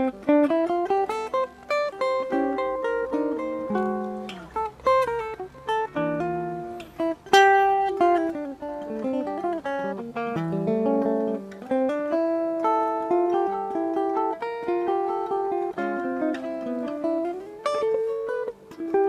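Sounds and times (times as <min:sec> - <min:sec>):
jazz guitar chords: 0:00.0 - 0:19.0.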